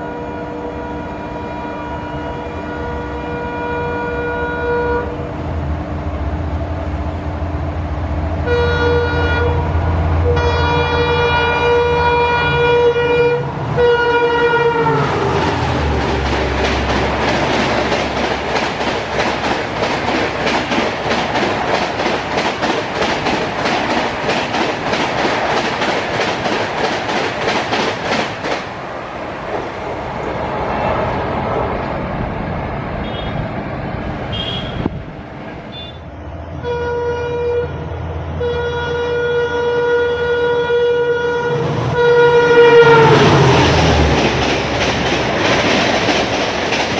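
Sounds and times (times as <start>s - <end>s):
locomotive horn: 0.0s - 5.3s, 8.4s - 15.6s, 33.0s - 33.4s, 34.3s - 35.0s, 35.7s - 43.6s
train wheels clattering over rail joints: 15.4s - 28.8s, 43.1s - 46.9s.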